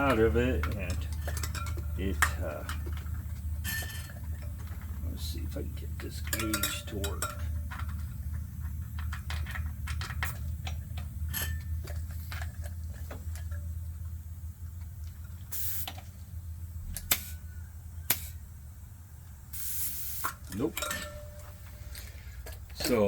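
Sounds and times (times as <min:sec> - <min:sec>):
gauge clicks and taps: 0:00.0 - 0:13.7
steady low hum: 0:00.0 - 0:23.0
short hiss of air: 0:15.5 - 0:15.9, 0:19.5 - 0:20.4.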